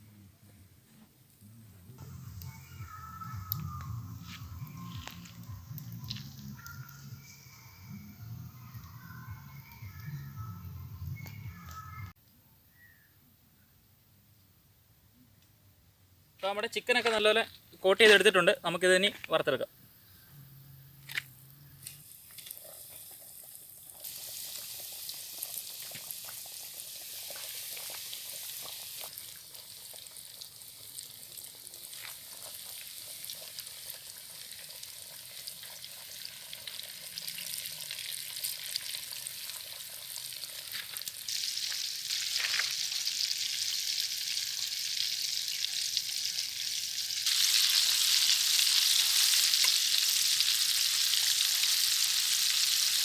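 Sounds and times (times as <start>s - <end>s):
oil crackles: 2.4s - 7.4s, 21.0s - 53.0s
chicken deep-frying in oil: 22.0s - 53.0s.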